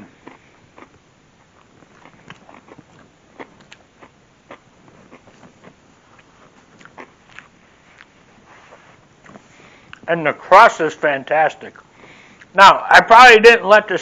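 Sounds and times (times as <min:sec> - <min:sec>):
man chewing food: 0:00.0 - 0:10.1, 0:11.7 - 0:12.6.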